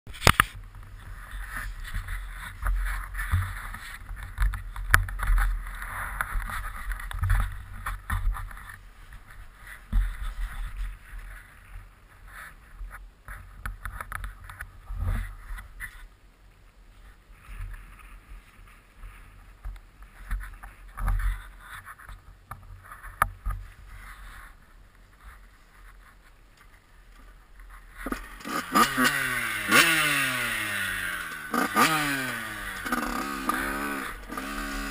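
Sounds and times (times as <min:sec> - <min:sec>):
dirt bike engine revving: 0:28.0 - 0:34.9.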